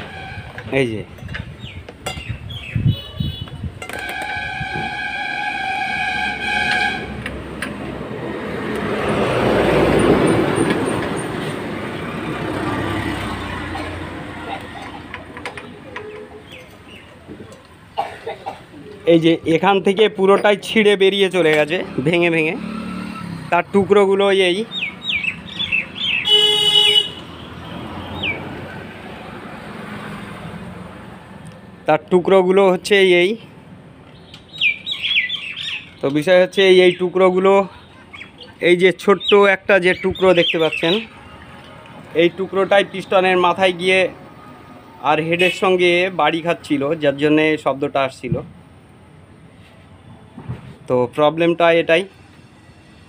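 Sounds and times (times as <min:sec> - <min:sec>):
vehicle road noise: 0:00.0 - 0:53.0
vehicle horn tone: 0:02.8 - 0:07.2, 0:26.2 - 0:28.3, 0:45.3 - 0:45.9
vehicle rushing past: 0:07.0 - 0:14.8, 0:21.4 - 0:26.2, 0:27.2 - 0:31.4
bird chirping: 0:15.6 - 0:17.2, 0:24.7 - 0:26.4, 0:28.0 - 0:28.5, 0:34.1 - 0:41.2.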